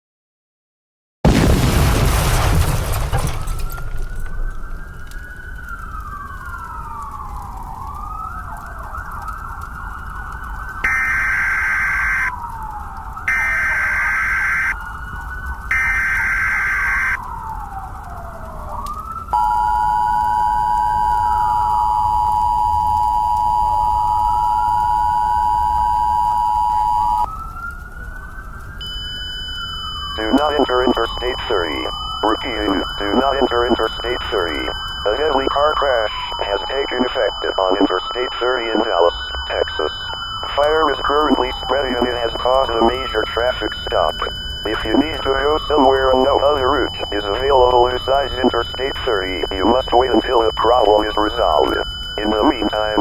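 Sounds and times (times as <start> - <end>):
loud blast: 1.3 - 3.8
emergency siren wailing: 2.9 - 53.0
two-tone attention signal: 19.4 - 27.2
raspy data bursts: 29.4 - 53.0.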